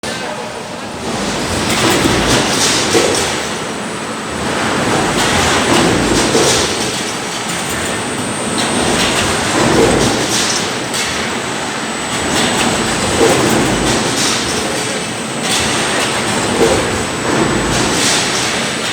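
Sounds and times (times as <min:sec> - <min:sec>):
industrial machinery clattering rumble: 0:00.0 - 0:18.9.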